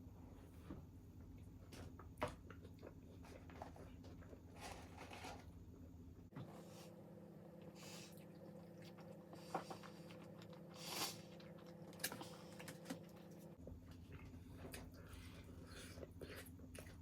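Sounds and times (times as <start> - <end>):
person chewing food: 2.0 - 4.5, 8.1 - 17.0.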